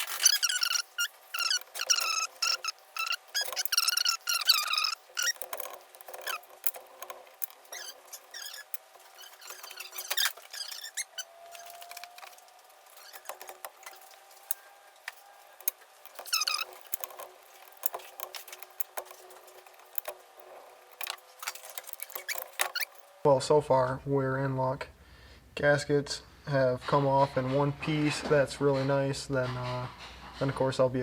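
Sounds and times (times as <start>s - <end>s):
brief squeaks: 0.0s - 6.8s, 7.4s - 20.1s, 21.0s - 23.1s
metal parts clicking and ticking: 0.0s - 23.2s.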